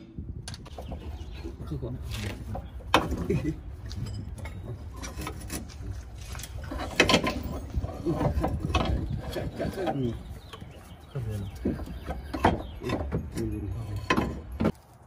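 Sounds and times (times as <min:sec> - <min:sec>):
metallic clicking and clanking: 0:02.2 - 0:10.6, 0:11.5 - 0:14.8.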